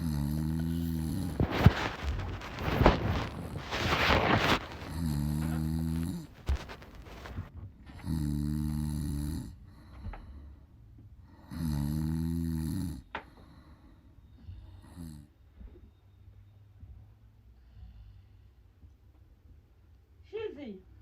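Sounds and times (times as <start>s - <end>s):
woman snoring: 0.0s - 2.0s, 3.2s - 9.6s, 11.3s - 13.2s.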